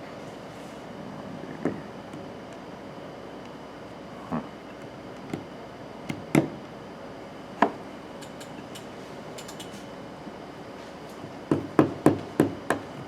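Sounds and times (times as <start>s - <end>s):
small handling clicks: 8.2s - 9.8s.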